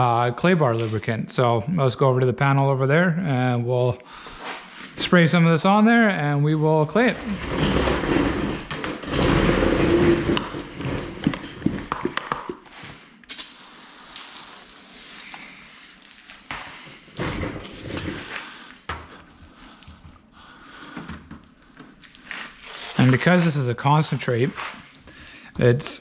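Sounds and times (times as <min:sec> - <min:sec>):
handling knocks and rubbing: 0:06.9 - 0:13.0.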